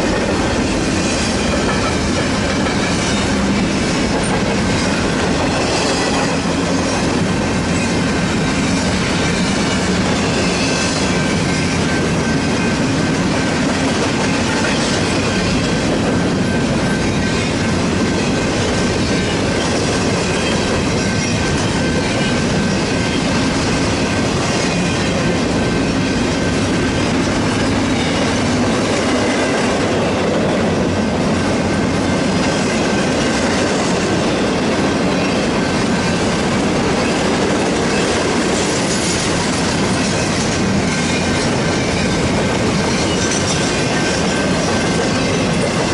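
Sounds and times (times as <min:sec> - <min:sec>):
freight train wheels rumbling: 0:00.0 - 0:45.9
high wheel squeal: 0:37.9 - 0:45.7.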